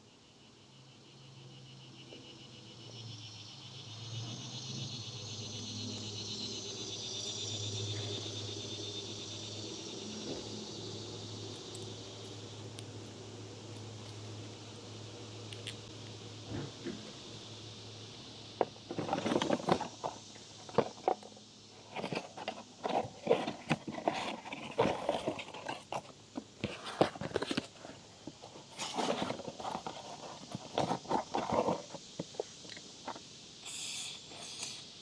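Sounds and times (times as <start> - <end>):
short hissy spray bursts: 33.6 - 35.0.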